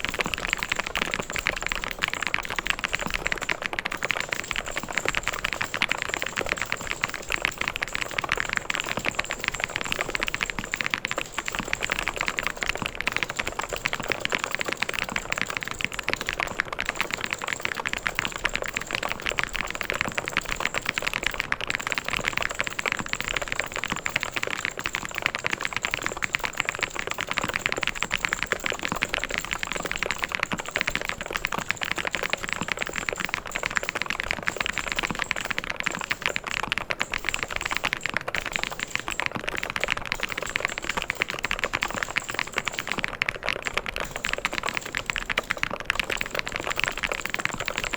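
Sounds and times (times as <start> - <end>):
mechanical keyboard typing: 0.0 - 47.9.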